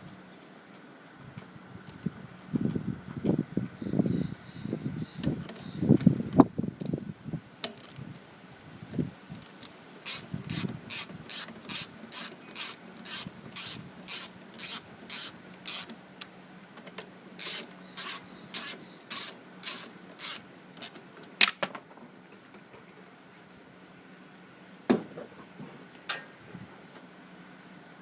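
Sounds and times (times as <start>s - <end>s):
socket ratchet clicking: 10.1s - 15.9s.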